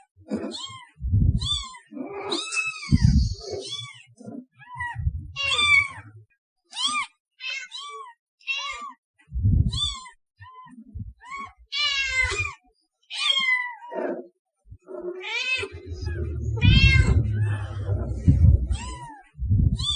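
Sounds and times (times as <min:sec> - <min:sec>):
cat meowing: 0:00.4 - 0:06.0, 0:06.7 - 0:09.0, 0:09.7 - 0:13.9, 0:15.2 - 0:19.2
low thuds: 0:01.0 - 0:01.5, 0:02.9 - 0:03.4, 0:04.9 - 0:05.4, 0:09.3 - 0:09.8, 0:15.7 - 0:19.9.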